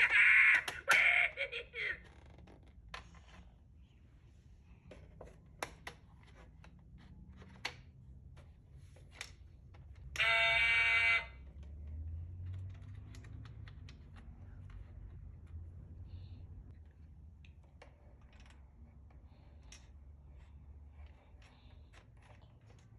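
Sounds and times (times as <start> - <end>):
loud electric buzzer: 10.2 - 11.4.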